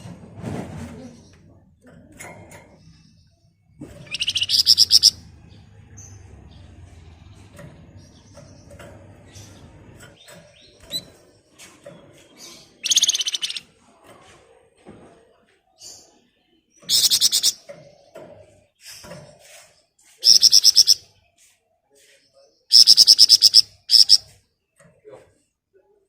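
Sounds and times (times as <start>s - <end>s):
faint bird chirps: 1.0s - 11.1s, 12.1s - 13.8s, 15.8s - 25.2s
songbird rattling trills: 4.0s - 11.2s, 12.4s - 13.6s, 16.8s - 18.0s, 18.8s - 21.5s, 22.7s - 24.3s.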